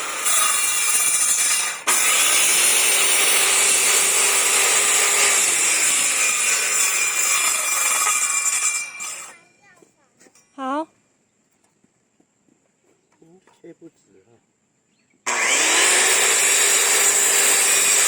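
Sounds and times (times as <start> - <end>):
power tool cutting wood: 0.0 - 9.4, 15.3 - 18.0.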